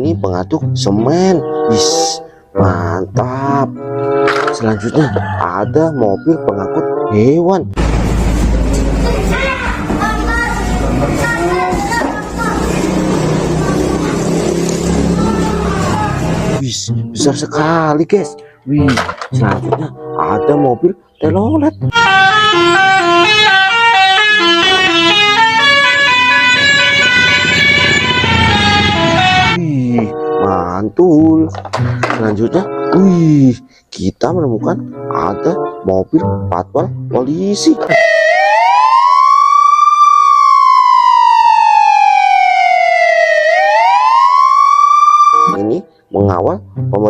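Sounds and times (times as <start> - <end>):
musical bus horn playing a tune: 21.8 - 30.4
police car siren wailing: 22.0 - 29.6, 37.8 - 45.6.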